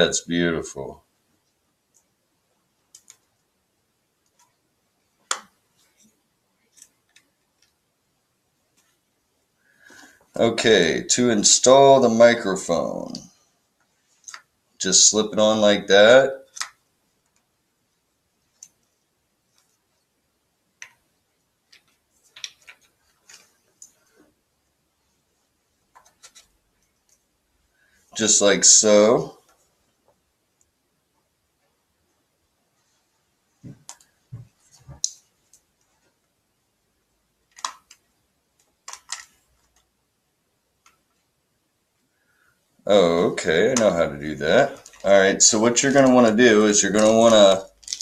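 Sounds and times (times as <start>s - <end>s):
sharp plastic clicks: 37.5s - 38.0s, 38.6s - 39.9s.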